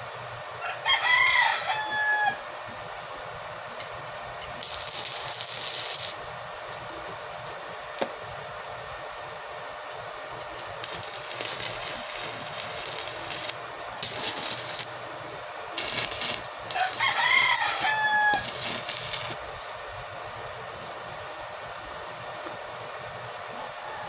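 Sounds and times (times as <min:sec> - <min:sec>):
rooster crowing: 0:00.6 - 0:02.4, 0:15.8 - 0:19.6
welding arc sizzling and crackling: 0:04.6 - 0:06.4, 0:10.8 - 0:20.0.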